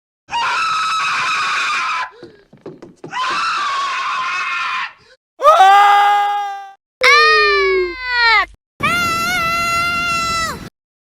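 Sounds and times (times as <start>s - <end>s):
cartoon character screaming: 4.3s - 10.6s.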